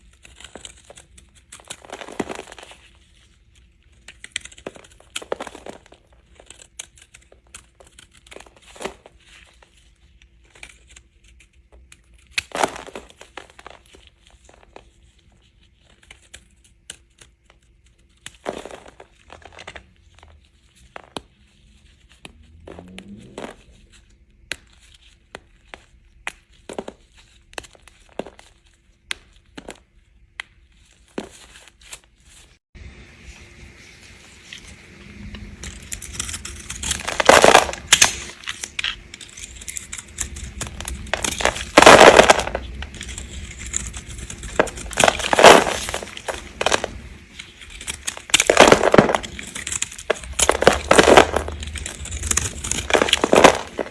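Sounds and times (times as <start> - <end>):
knife cutting bar soap: 0.0 - 14.4.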